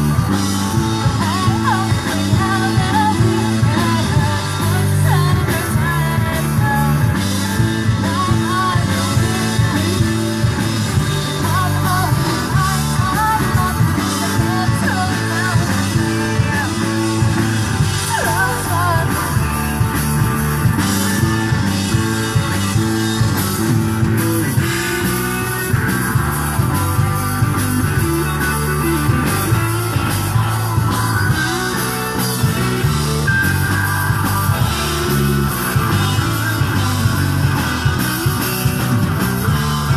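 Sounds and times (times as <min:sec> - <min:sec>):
electric guitar: 0:00.0 - 0:39.9
steady drum beat: 0:00.0 - 0:39.9
person singing: 0:00.5 - 0:20.1.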